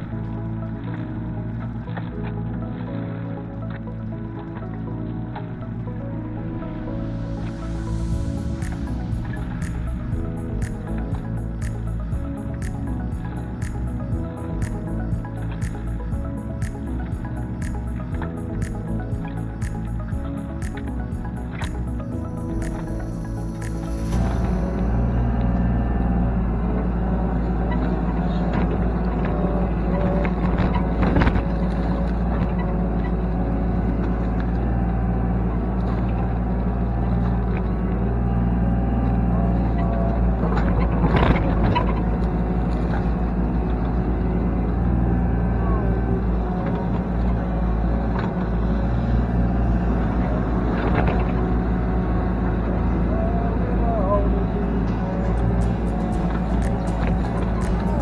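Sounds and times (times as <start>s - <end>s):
excavator diesel engine running: 7.6s - 58.0s
scattered clicks: 8.6s - 24.9s, 55.3s - 58.0s.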